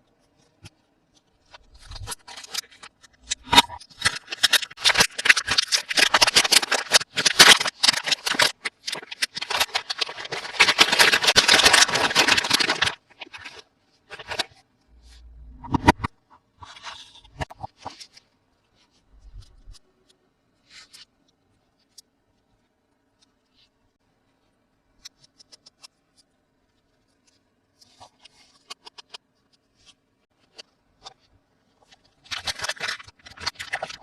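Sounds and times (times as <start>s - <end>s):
packaging crinkling and tearing: 1.5s - 14.5s, 31.8s - 34.0s.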